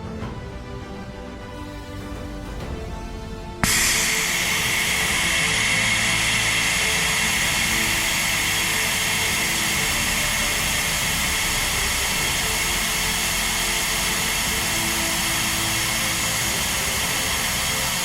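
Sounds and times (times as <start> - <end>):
air hissing out of a tire: 3.6 - 18.0.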